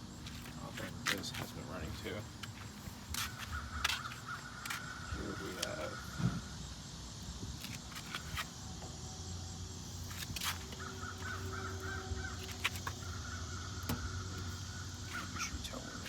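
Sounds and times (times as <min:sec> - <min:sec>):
crows cawing: 0:03.1 - 0:06.5, 0:10.8 - 0:16.0.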